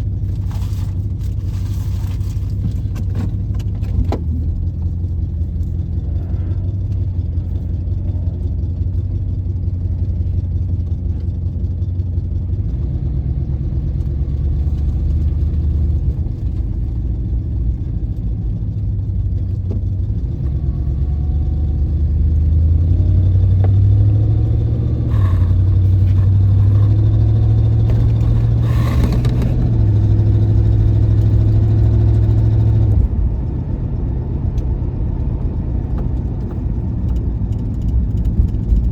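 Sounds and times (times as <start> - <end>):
car engine revving while driving: 12.2 - 38.9.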